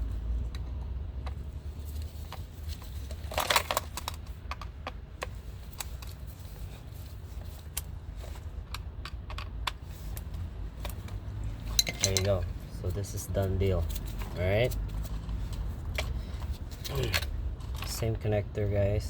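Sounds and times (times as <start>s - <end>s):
hand tools clicking on metal latch: 11.8s - 12.4s.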